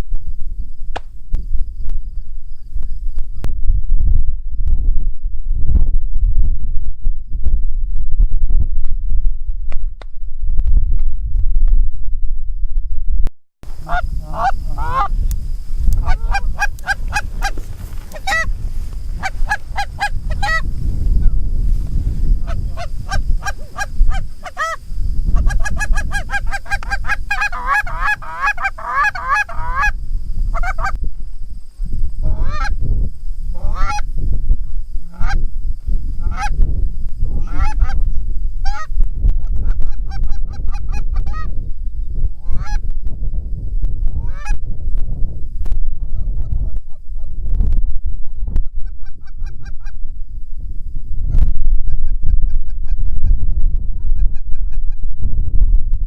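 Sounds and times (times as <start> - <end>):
wind rumble on microphone: 0.0 - 56.0
goose honks and clucks: 13.8 - 15.1, 16.0 - 18.5, 19.2 - 20.6, 22.4 - 24.8, 25.4 - 31.0, 32.2 - 32.8, 33.6 - 34.1, 35.1 - 35.4, 36.2 - 36.5, 37.4 - 38.0, 38.6 - 38.9, 39.6 - 41.5, 42.4 - 42.8, 44.2 - 44.6, 48.8 - 50.0.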